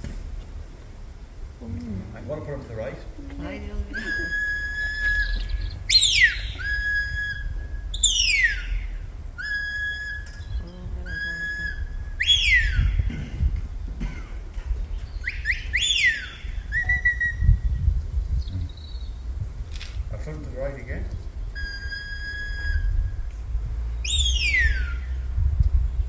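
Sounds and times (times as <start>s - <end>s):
shepherd's whistled commands: 3.9s - 13.1s, 15.2s - 17.7s, 24.0s - 25.1s.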